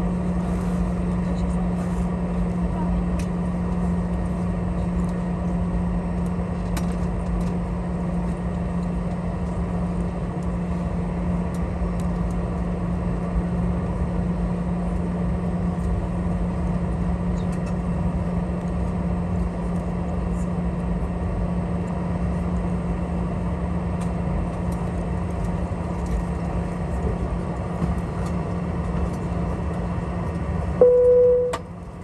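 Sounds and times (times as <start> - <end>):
airliner cabin hum: 27.8 - 32.0.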